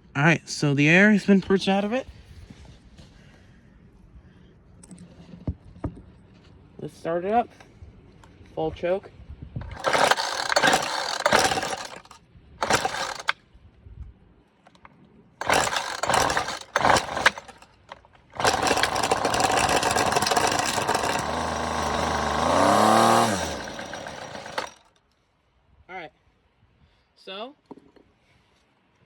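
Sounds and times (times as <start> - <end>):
string trimmer engine running: 9.6 - 13.3, 15.4 - 25.0
recoil starter pulls: 9.6 - 13.4, 14.7 - 25.0.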